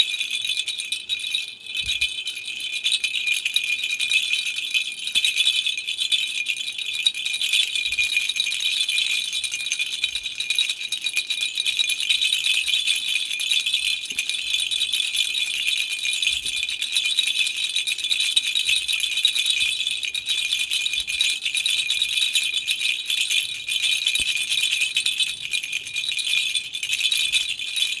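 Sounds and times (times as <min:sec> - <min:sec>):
baby rattle shaking: 0:20.9 - 0:28.0.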